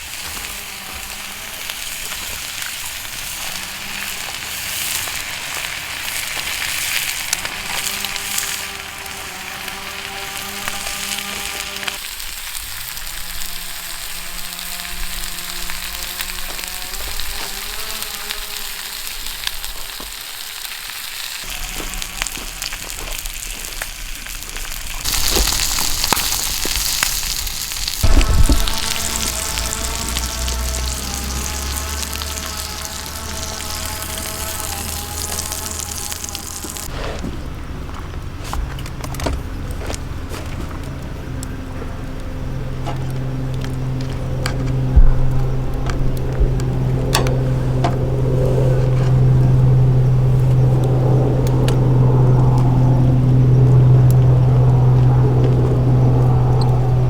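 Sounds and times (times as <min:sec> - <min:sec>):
food sizzling in a frying pan: 0:18.2 - 0:36.9
loud bump: 0:28.0 - 0:36.9, 0:42.6 - 0:57.0.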